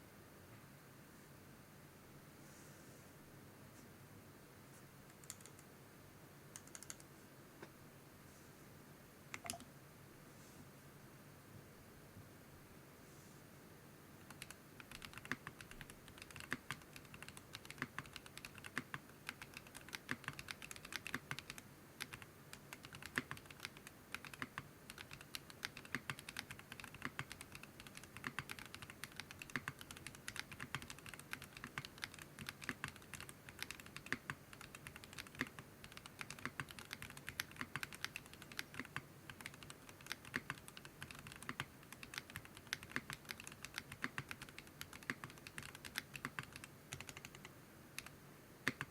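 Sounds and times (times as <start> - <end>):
mechanical keyboard typing: 5.1 - 5.6, 6.6 - 7.0, 9.4 - 9.6, 14.3 - 48.9.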